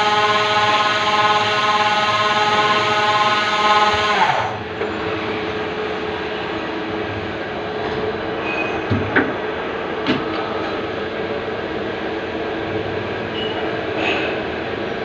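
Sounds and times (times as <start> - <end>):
lathe machine humming: 0.0 - 8.4.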